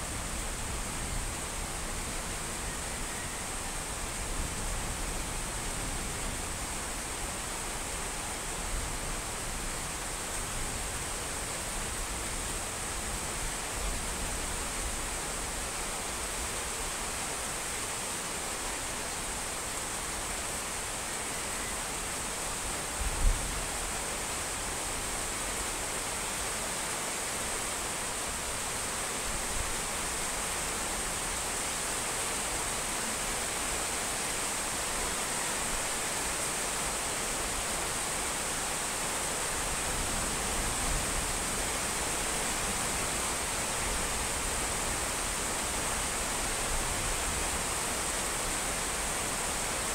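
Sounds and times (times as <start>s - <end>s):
steady rain falling: 0.0s - 49.9s.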